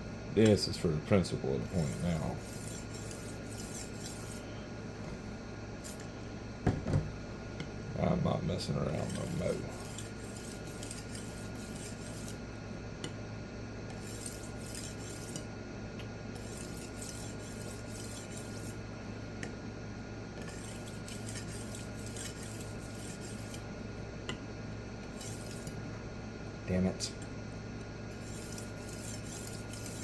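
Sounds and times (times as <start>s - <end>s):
steady low hum: 0.0s - 30.0s
knife scraping on sharpening stone: 1.6s - 4.4s, 8.9s - 12.4s, 13.9s - 15.4s, 16.4s - 18.7s, 20.4s - 23.6s, 25.1s - 25.8s, 28.2s - 30.0s.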